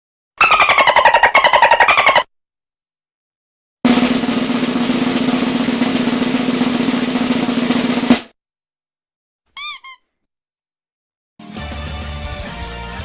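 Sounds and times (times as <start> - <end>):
rubber duck squeaks: 0.4 - 2.3, 9.5 - 10.2
snare drum roll: 3.8 - 8.3.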